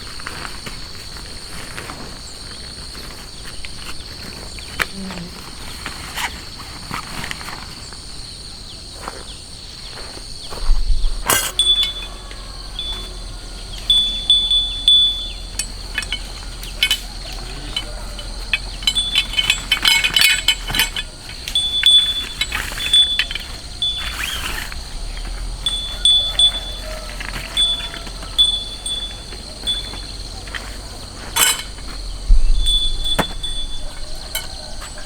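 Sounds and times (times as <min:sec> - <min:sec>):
light metallic clinks: 0:11.2 - 0:35.0.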